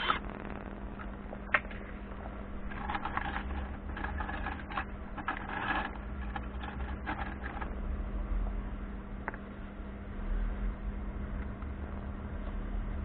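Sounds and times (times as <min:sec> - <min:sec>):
steady low hum: 0:00.0 - 0:13.0
objects clicking and rustling: 0:02.7 - 0:07.7.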